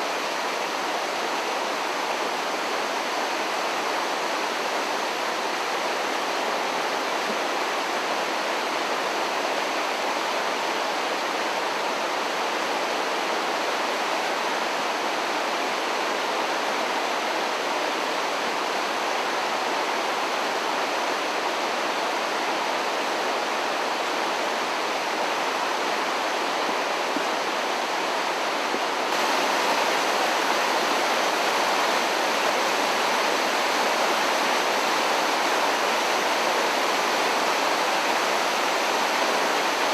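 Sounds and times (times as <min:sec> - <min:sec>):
floodwater rushing: 0:13.8 - 0:39.9.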